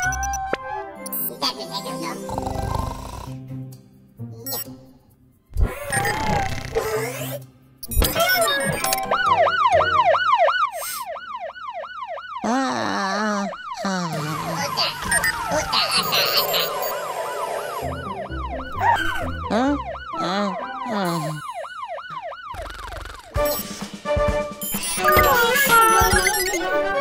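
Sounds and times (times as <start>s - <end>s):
cartoon sound effects: 5.6s - 10.0s, 12.4s - 21.7s, 24.8s - 26.8s
cartoon fire engine siren: 8.3s - 23.4s, 24.9s - 27.0s.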